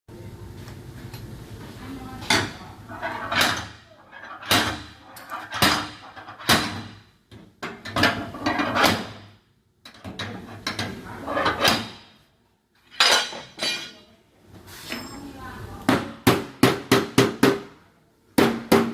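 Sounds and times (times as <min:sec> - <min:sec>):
hammer striking metal car fender: 0:18.4 - 0:18.9.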